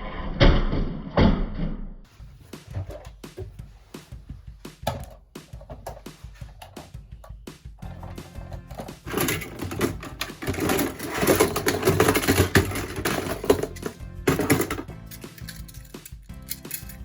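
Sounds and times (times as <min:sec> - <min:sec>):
background music: 0:02.1 - 0:17.0
plastic toy cars clattering: 0:07.9 - 0:17.0.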